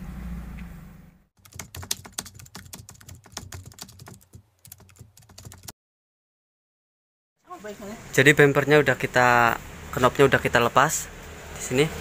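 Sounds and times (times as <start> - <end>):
rapid irregular clicking and tapping: 1.4 - 5.7.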